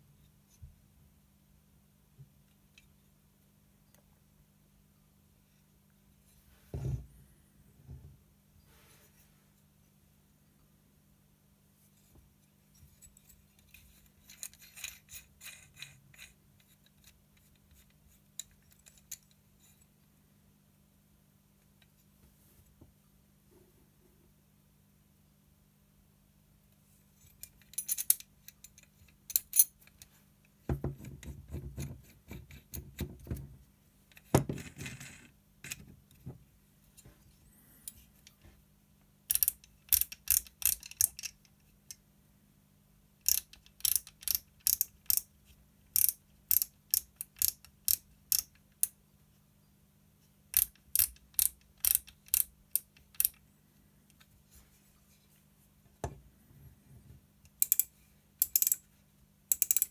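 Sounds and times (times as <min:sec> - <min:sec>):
rustling and knocks: 0:06.6 - 0:07.2, 0:55.9 - 0:57.3.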